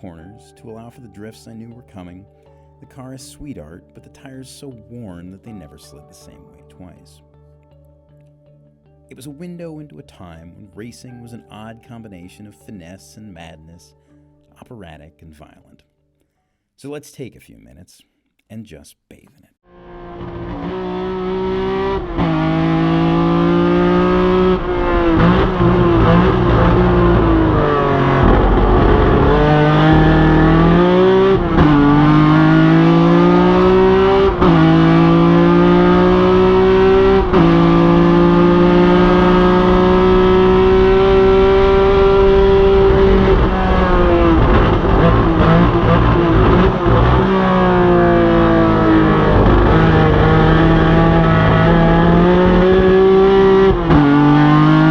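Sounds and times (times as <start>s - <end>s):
race car engine revving: 19.7s - 54.9s.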